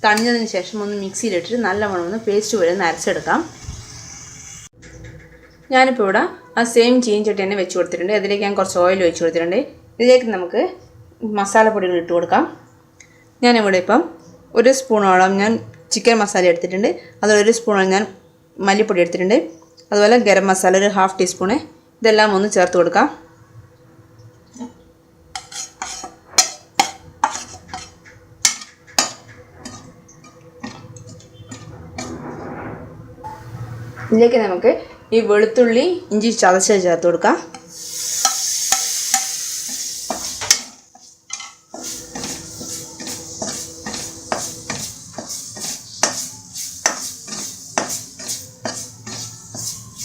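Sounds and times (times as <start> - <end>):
food sauteing in oil: 0.4 - 4.7, 37.7 - 50.0
spoon scraping a metal pan: 24.5 - 34.2, 37.5 - 50.0.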